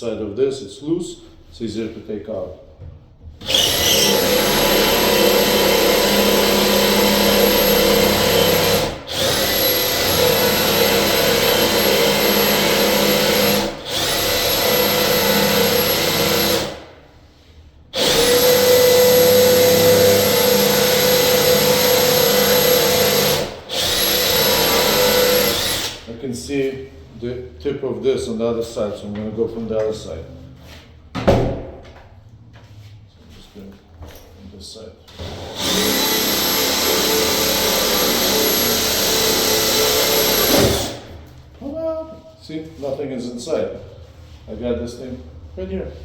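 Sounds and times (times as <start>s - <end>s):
electric drill boring through wood: 3.4s - 16.8s, 18.0s - 26.1s, 35.1s - 41.1s.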